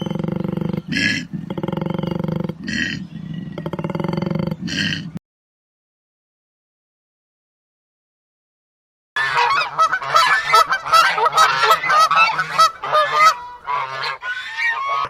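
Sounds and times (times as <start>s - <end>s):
geese honking: 0.0s - 0.2s, 9.2s - 15.0s.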